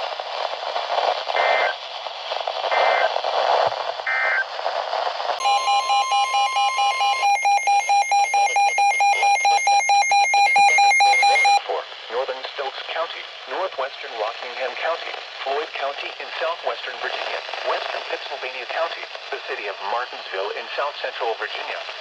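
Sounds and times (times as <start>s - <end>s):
radio hiss: 0.8s - 4.6s, 10.5s - 22.0s
loud alert tone with beeping: 5.4s - 11.6s
two-tone warbling data bursts: 5.4s - 11.6s.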